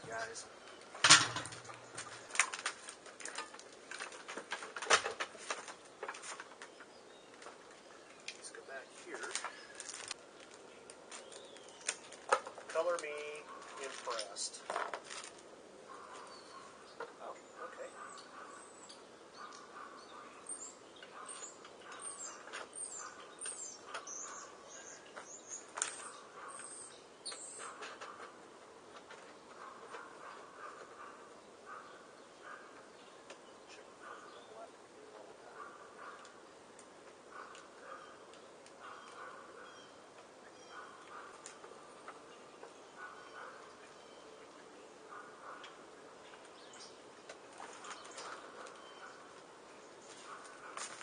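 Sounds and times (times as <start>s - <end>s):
small birds chirping: 0.0s - 1.0s, 1.6s - 4.1s, 5.4s - 51.0s
sharp clicks and knocks: 0.9s - 7.6s
cardboard crackling and snapping: 1.6s - 6.8s, 9.2s - 15.5s.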